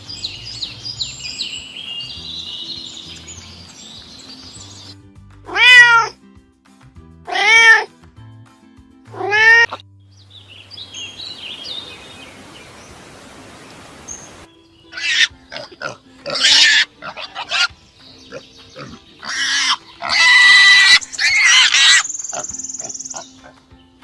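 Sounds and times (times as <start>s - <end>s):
shrill animal calls: 14.9s - 23.6s.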